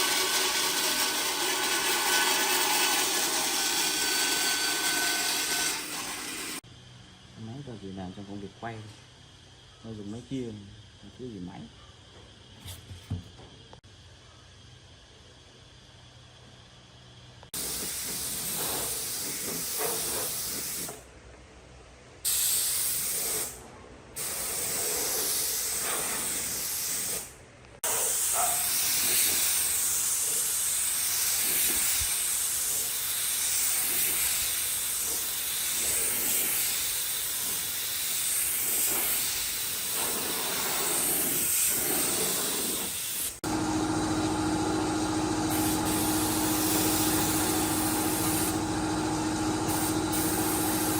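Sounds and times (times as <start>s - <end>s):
compressed air hissing: 17.5s - 21.0s, 22.3s - 23.6s, 24.2s - 43.6s, 45.1s - 50.9s
steady hum: 43.4s - 50.9s.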